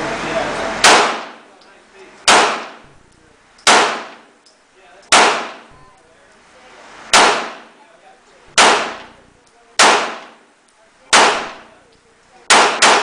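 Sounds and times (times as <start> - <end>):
handgun shots with echo: 0.8 - 1.4, 2.3 - 2.8, 3.6 - 4.2, 5.1 - 5.7, 7.1 - 7.7, 8.6 - 9.2, 9.8 - 10.4, 11.1 - 11.7, 12.5 - 13.0.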